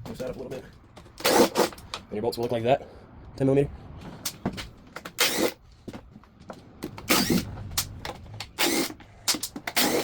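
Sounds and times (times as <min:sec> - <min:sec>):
hand tool noisy bursts: 0:01.2 - 0:01.8, 0:05.2 - 0:05.6, 0:08.6 - 0:10.0.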